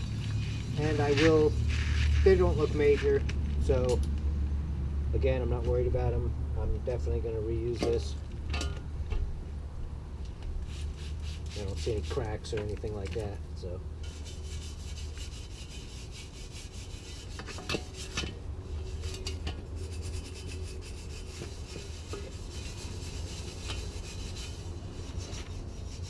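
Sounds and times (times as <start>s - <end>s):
brush scrubbing metal pipe: 0.0s - 3.2s, 10.6s - 13.0s, 14.0s - 26.0s.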